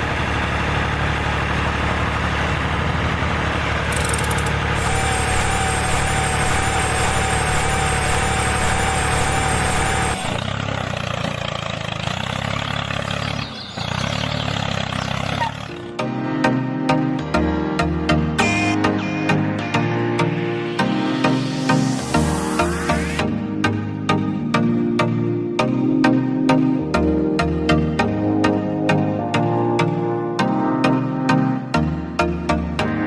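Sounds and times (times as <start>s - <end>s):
engine idling: 0.0s - 16.0s.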